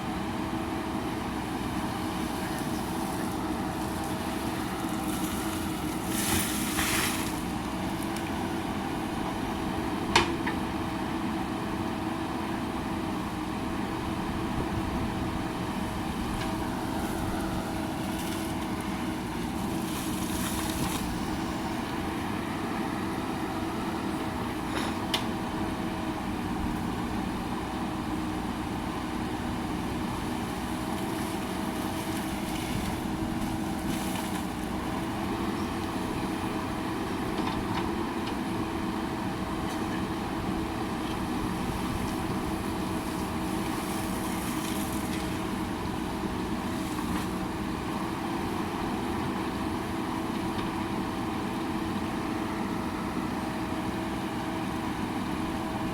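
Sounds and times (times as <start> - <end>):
diesel engine running under work: 0.0 - 55.9.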